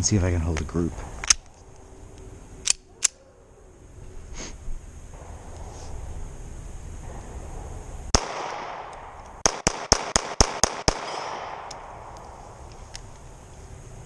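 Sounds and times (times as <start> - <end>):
pistol shots with ringing tail: 8.1 - 12.6.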